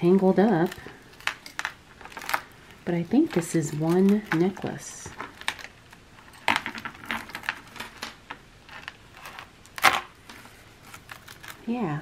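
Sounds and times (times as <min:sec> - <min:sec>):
jewelry clicking and rattling: 0:00.4 - 0:10.1.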